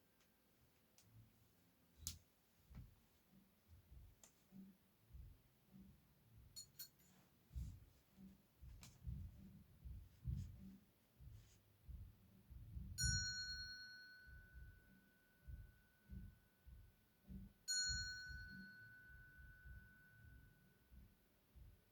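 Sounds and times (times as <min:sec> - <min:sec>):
faint low thumps: 0:08.6 - 0:13.2.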